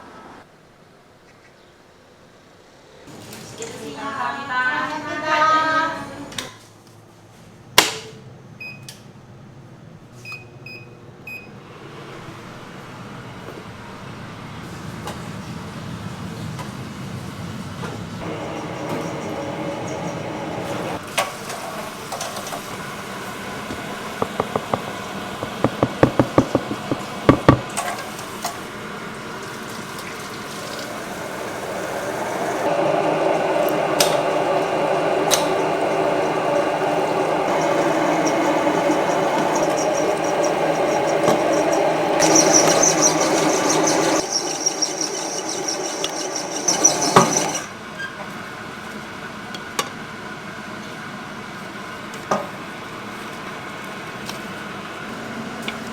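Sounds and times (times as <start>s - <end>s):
kitchen machine whirring: 18.2s - 28.0s, 30.8s - 47.7s
machine clicks and knocks: 24.2s - 27.7s.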